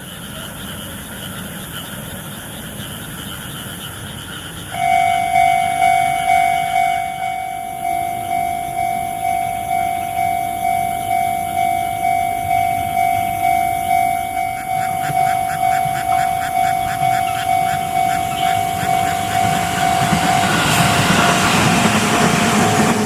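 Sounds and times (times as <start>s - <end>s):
frogs calling: 0.0s - 23.0s
level-crossing alarm ringing: 4.7s - 23.0s.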